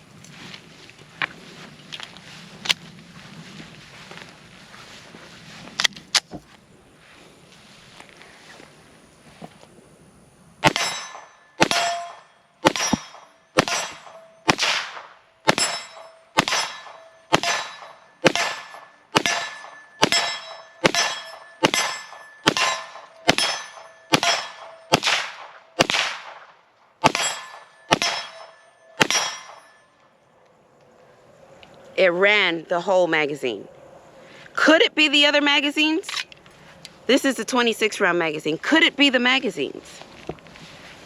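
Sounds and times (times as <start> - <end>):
bullets ringing on steel target: 10.6 - 14.7, 15.4 - 25.4, 27.0 - 30.0
pistol shots: 10.6 - 29.8.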